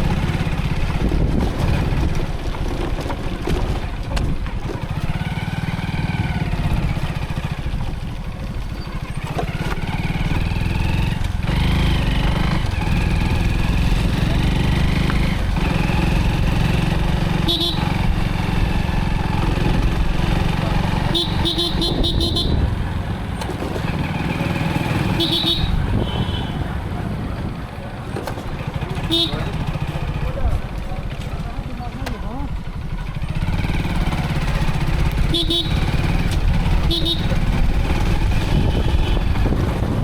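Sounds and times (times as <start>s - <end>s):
motorcycle engine rumbling: 0.0s - 40.0s
wind on microphone: 0.7s - 2.5s, 25.6s - 27.7s, 36.3s - 40.0s
vehicle horn beeping: 17.3s - 18.2s, 21.0s - 22.8s, 25.0s - 26.8s, 29.0s - 29.8s, 35.2s - 36.2s, 36.8s - 37.5s, 38.4s - 39.5s.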